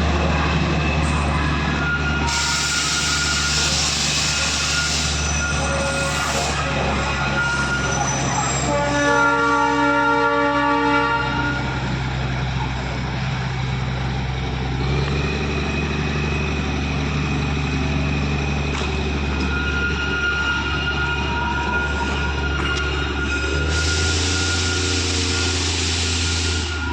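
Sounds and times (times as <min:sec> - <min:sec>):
train rumbling: 0:00.0 - 0:26.9
train horn toot: 0:04.7 - 0:11.8.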